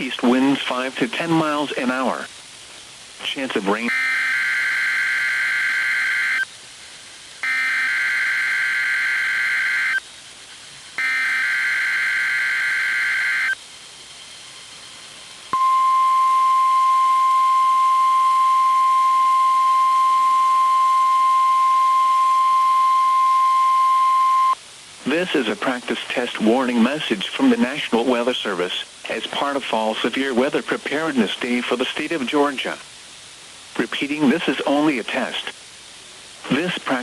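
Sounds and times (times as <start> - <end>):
screeching digital data bursts: 3.2 - 6.5, 7.4 - 10.0, 11.0 - 13.6
steady warning alarm tone: 3.8 - 6.5, 7.4 - 10.0, 11.0 - 13.6, 15.6 - 24.6.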